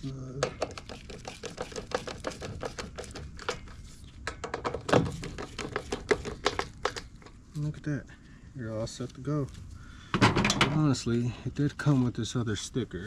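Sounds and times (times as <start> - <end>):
hand tools clicking on plastic: 0.6 - 7.3.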